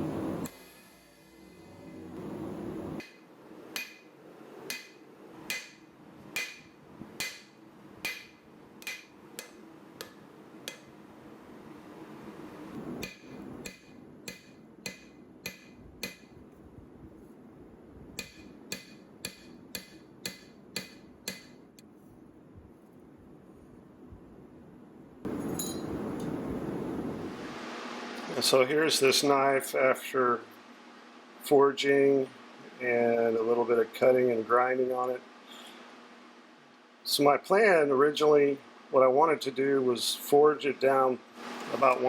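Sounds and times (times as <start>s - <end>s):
hammer ringing on anvil: 25.3s - 25.9s.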